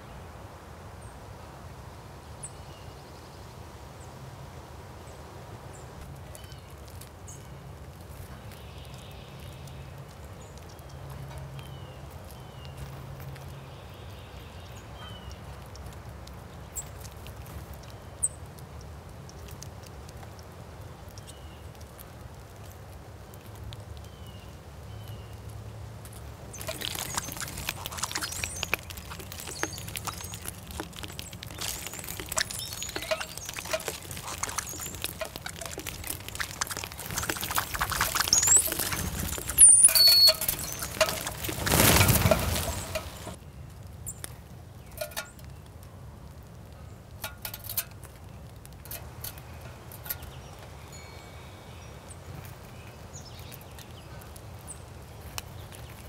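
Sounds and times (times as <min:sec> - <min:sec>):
birds chirping: 0:05.7 - 0:19.6, 0:26.4 - 0:43.5
birds pecking and scattering seed: 0:06.0 - 0:56.0.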